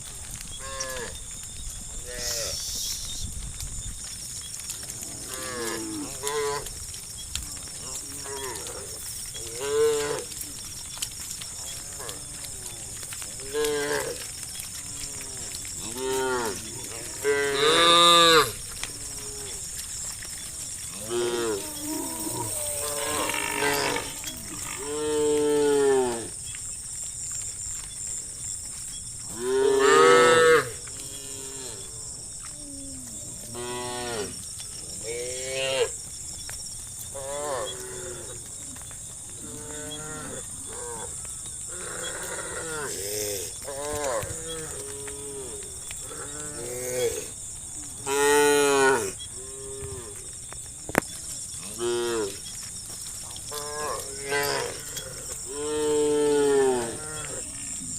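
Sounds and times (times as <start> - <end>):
steady high hiss: 2.0 - 3.4
cows mooing: 11.6 - 19.9, 20.7 - 26.3, 29.3 - 32.0.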